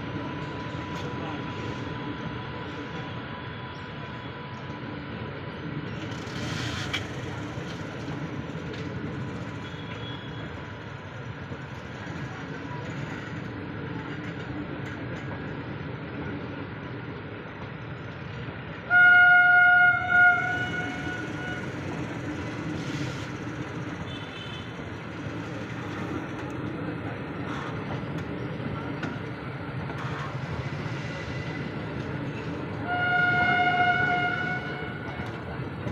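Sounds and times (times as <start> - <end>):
train rumbling past: 0.0 - 35.9
train horn blast: 18.9 - 21.8, 32.8 - 35.4.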